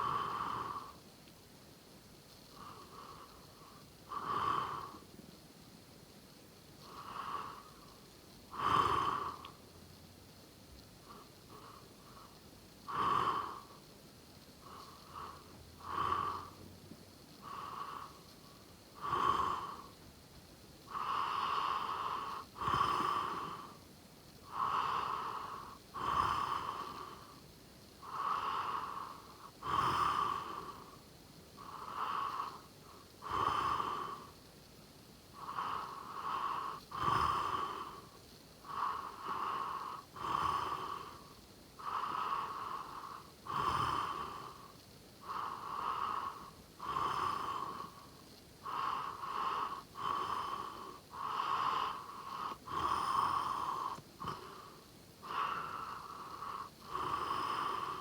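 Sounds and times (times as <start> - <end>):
person snoring: 20.9 - 23.7, 24.5 - 27.2, 41.8 - 44.6, 45.2 - 48.0, 48.6 - 58.0.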